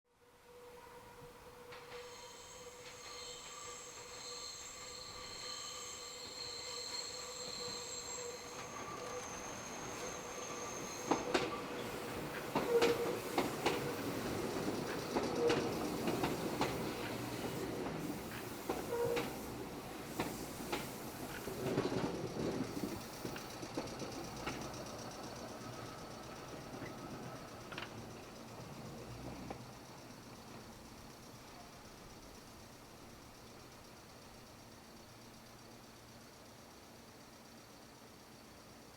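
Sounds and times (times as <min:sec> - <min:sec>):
train wheels squealing: 0:00.5 - 0:30.7
rail joint clacks: 0:01.6 - 0:29.7
train running rumble: 0:01.6 - 0:32.4.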